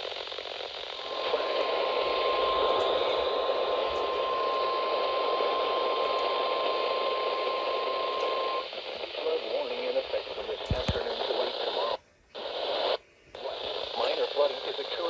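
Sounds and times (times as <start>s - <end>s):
radio hiss: 0.0s - 15.0s
steady warning alarm tone: 1.3s - 8.6s.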